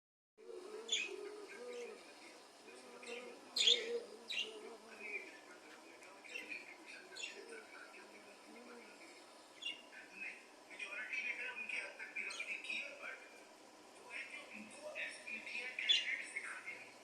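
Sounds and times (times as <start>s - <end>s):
wavering bird warble: 0.4s - 2.1s, 2.8s - 5.4s
budgerigars chirping: 0.9s - 1.2s, 3.1s - 4.6s.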